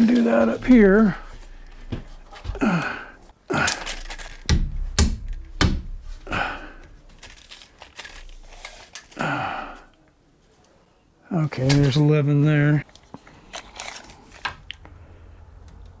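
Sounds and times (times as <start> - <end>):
short rustles: 0.0 - 4.5, 5.9 - 9.2
sharp knocks on wood: 4.5 - 6.2.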